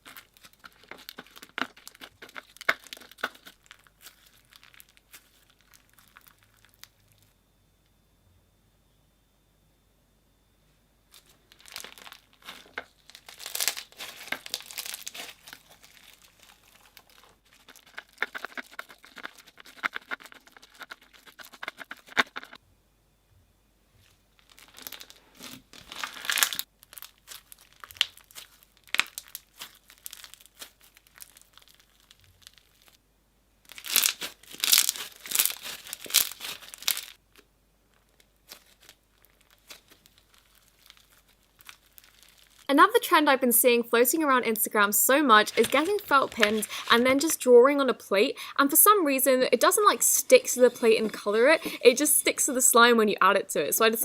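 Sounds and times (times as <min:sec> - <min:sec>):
slime crackling and popping: 0:00.0 - 0:07.3, 0:11.2 - 0:22.6, 0:24.4 - 0:33.0, 0:33.6 - 0:42.7.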